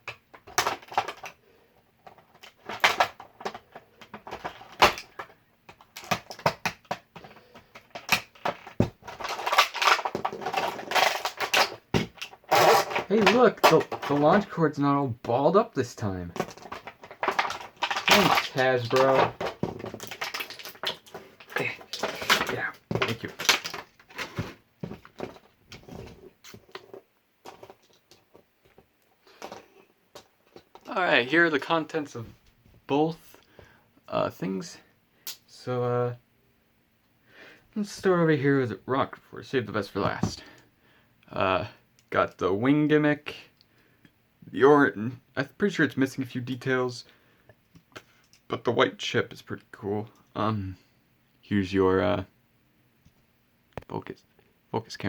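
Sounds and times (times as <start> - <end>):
plastic toy parts clicking: 0.0 - 1.4, 2.0 - 14.5, 16.4 - 24.4
packaging crinkling: 2.3 - 14.5, 16.4 - 29.6.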